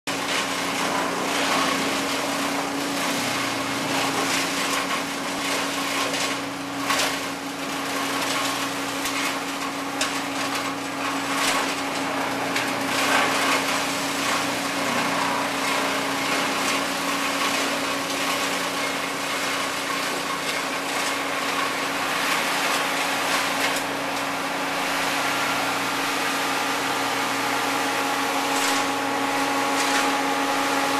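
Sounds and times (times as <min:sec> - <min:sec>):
wood chipper engine hum: 0:00.1 - 0:30.9.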